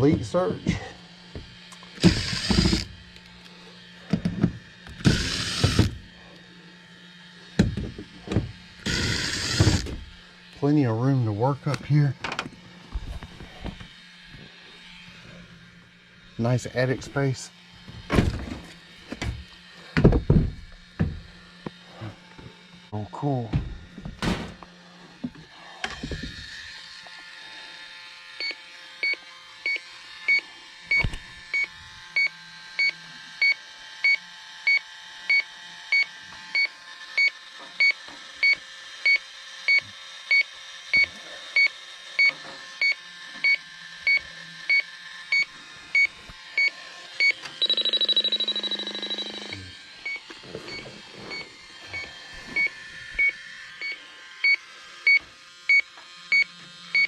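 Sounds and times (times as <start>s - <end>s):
leak detector beeping: 2.0s - 3.0s, 28.4s - 57.0s
steady high tone: 46.6s - 54.0s.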